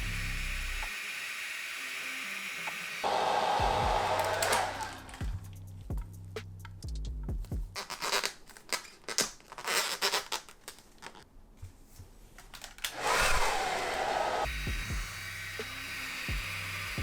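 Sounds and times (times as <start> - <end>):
packaging clicks: 4.1 - 5.4, 7.7 - 11.3, 12.3 - 14.5
packaging scraping and rustling: 7.8 - 11.3.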